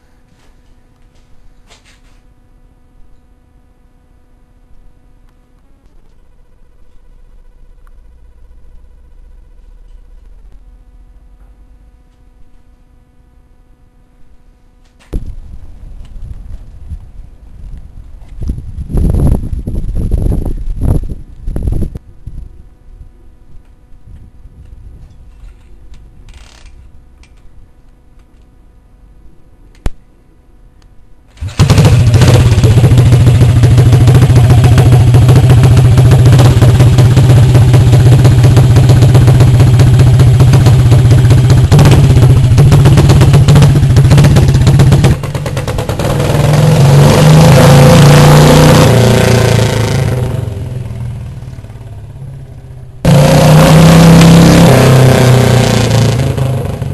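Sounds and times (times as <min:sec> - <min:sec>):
click: 0:29.7 - 0:30.0
motorcycle engine running: 0:31.4 - 0:56.9.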